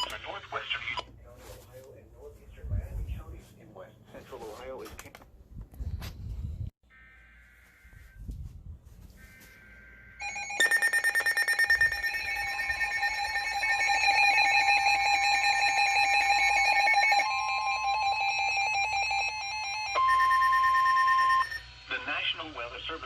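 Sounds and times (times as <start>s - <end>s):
overlapping electronic alarm tones: 9.2s - 21.8s
steady warning alarm tone: 9.2s - 22.2s.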